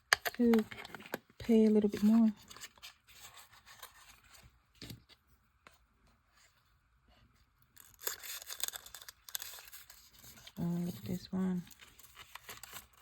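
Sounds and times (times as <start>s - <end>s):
wrapping crinkling: 7.8s - 13.0s.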